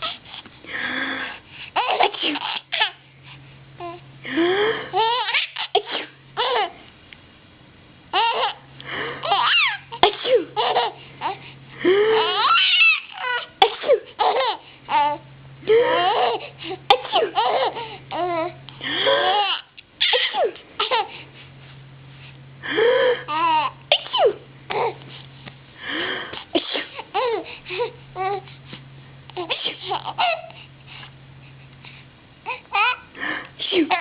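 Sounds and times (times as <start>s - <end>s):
young child laughing: 1.8s - 3.0s
pretend sneezes: 26.4s - 27.0s, 29.5s - 29.9s, 33.6s - 34.0s.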